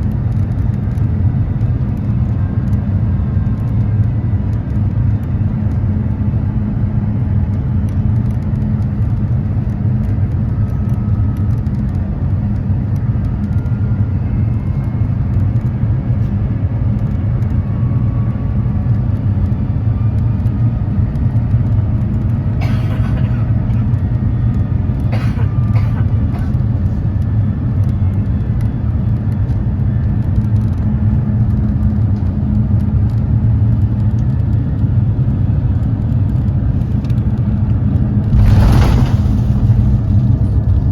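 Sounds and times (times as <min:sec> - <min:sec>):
airplane cabin engine rumble: 0:00.0 - 0:40.9
low hum: 0:37.9 - 0:40.9
brief clatters: 0:38.2 - 0:40.9.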